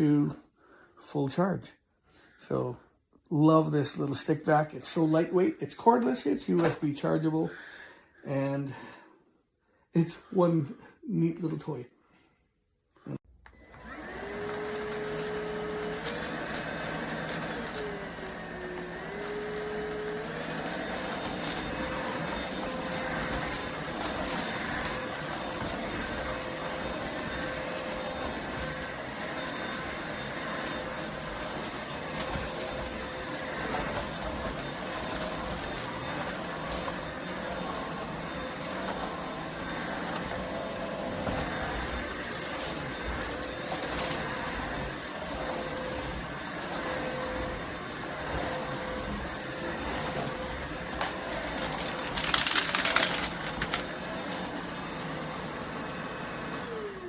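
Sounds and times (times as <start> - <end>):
vacuum cleaner motor running: 13.5 - 57.0.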